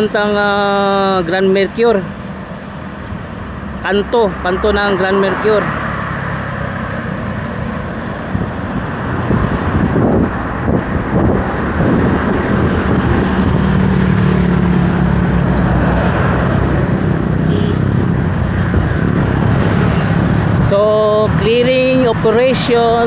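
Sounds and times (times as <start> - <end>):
vehicle engines: 0.0 - 23.0
tyre noise on road: 2.0 - 23.0.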